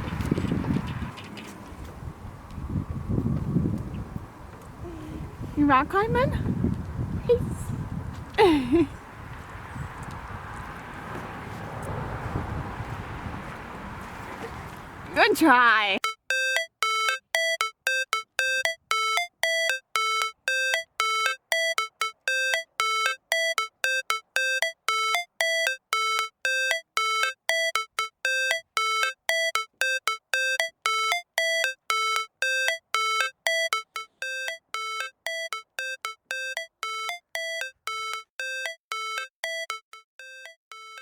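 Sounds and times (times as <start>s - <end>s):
bell-like synth melody: 16.0s - 41.0s.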